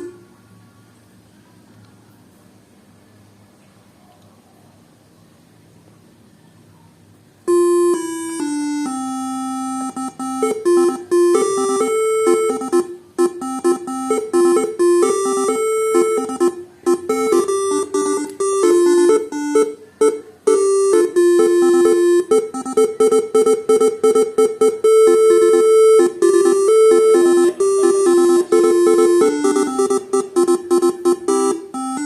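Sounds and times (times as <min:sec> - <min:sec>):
horn playing fast melody: 0:07.6 - 0:19.7, 0:20.5 - 0:22.8, 0:24.7 - 0:32.0.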